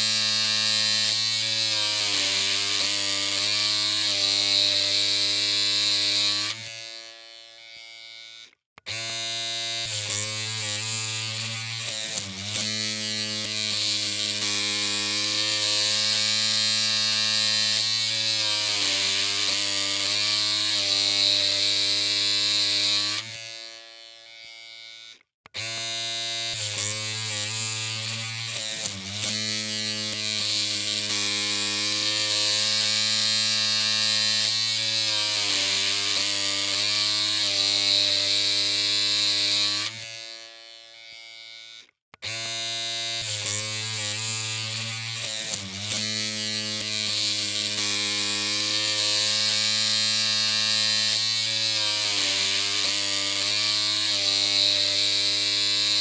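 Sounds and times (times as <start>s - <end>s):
electric hair clippers humming: 0.0s - 56.0s.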